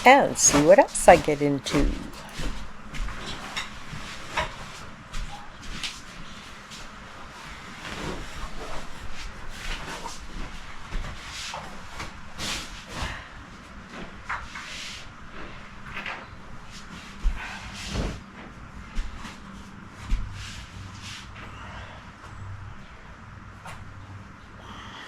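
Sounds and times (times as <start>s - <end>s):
bed covers rustling: 0.0s - 14.2s.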